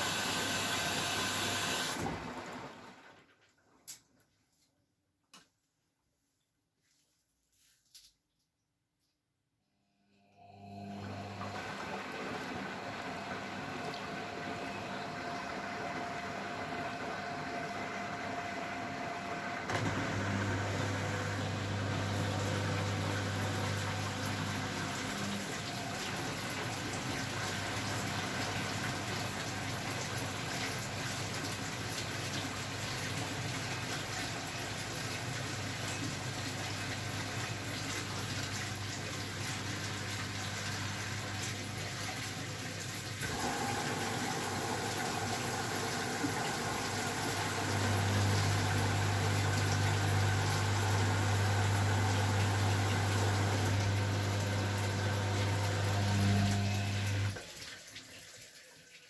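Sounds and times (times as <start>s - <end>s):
washing machine water rushing: 0.0s - 3.4s, 10.5s - 59.0s.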